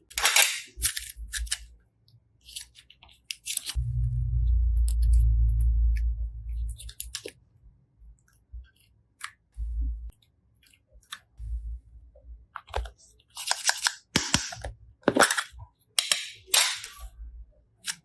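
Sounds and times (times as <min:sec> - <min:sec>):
low thuds: 0:03.8 - 0:06.8.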